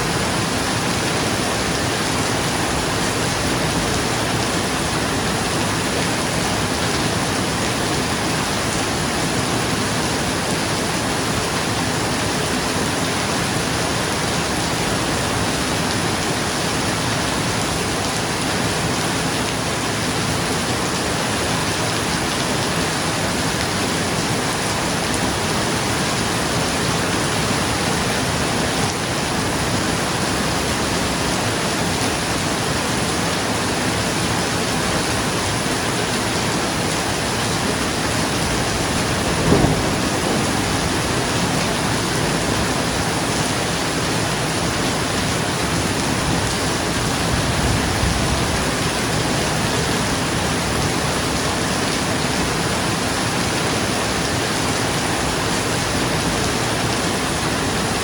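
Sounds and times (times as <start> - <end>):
heavy rain drumming on a roof: 0.0 - 58.0
low crack of thunder: 38.3 - 43.0.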